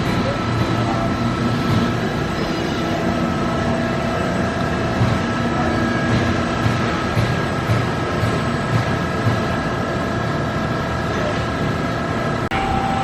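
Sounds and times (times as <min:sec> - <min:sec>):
constant whining tones: 0:00.0 - 0:07.2, 0:12.0 - 0:13.0
machine hum: 0:00.0 - 0:13.0.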